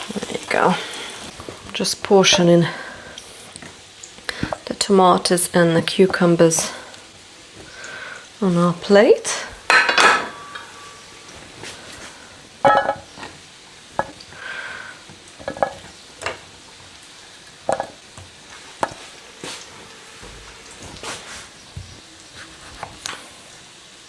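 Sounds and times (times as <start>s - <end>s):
bread sizzling in oil: 0.0s - 24.0s
utensils and plates clinking: 9.3s - 13.4s, 15.4s - 16.4s.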